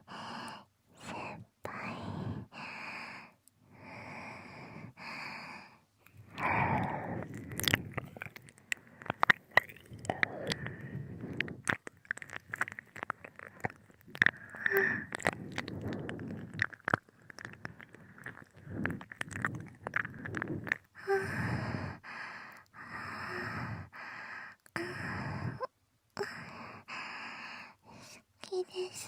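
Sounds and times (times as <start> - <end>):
breathy exhalations: 2.0 - 28.2
wet mouth smacks and clicks: 6.0 - 21.5.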